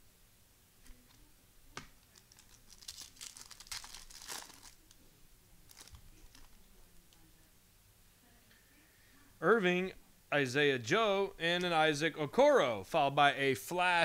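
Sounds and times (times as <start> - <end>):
foil wrapper crinkling: 2.0 - 5.0, 5.7 - 6.6.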